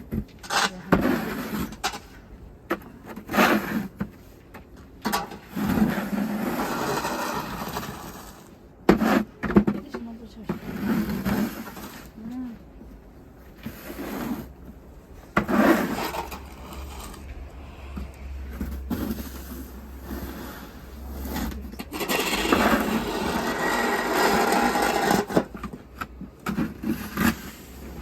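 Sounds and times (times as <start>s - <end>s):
snow shovel scraping snow: 0.5s - 1.8s, 3.2s - 4.0s, 5.4s - 9.3s, 10.6s - 12.1s, 13.6s - 14.6s, 15.3s - 17.3s, 18.5s - 25.4s.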